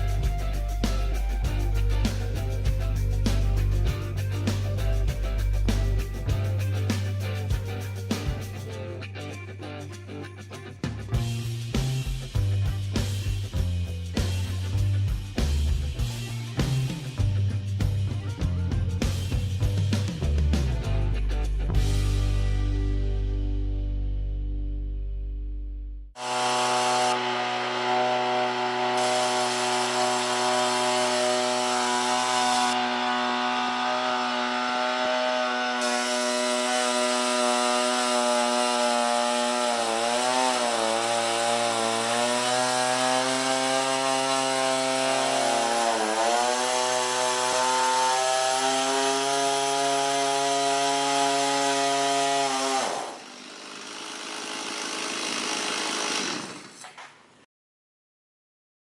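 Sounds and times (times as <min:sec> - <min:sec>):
two-stroke engine running: 0:00.0 - 0:08.8, 0:26.2 - 0:57.0.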